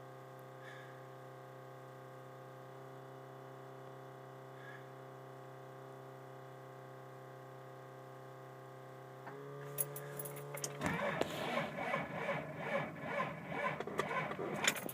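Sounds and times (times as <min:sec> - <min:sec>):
starter cranking engine: 0:09.8 - 0:14.9.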